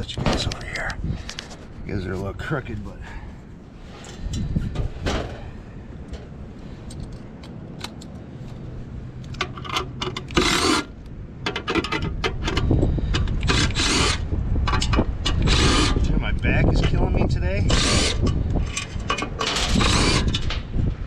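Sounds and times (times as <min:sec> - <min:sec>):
metal tools clinking and scraping: 0:03.8 - 0:05.5, 0:17.7 - 0:20.6
loud rasping: 0:13.3 - 0:14.3, 0:15.3 - 0:16.1, 0:17.6 - 0:18.3, 0:19.5 - 0:20.3.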